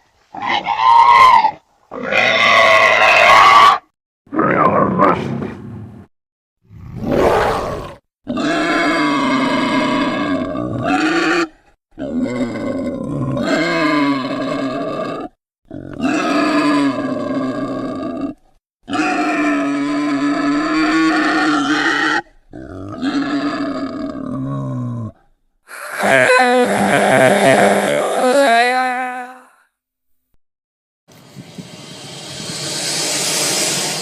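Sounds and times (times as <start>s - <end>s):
long growling creature calls: 6.8s - 29.5s
creature grunts: 23.8s - 28.6s.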